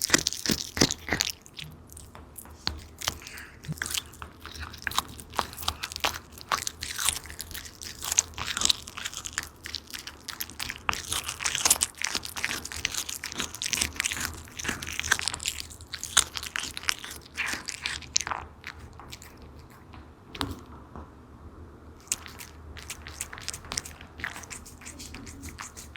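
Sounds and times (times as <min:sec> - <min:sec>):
cat crunching on fish: 0:00.0 - 0:20.6, 0:22.0 - 0:25.9.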